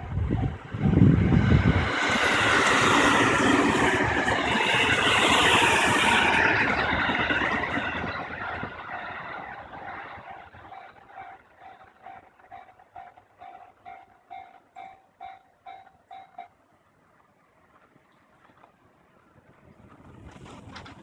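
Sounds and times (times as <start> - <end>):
electric train passing: 0.0 - 16.6
level crossing warning bell: 7.2 - 16.6.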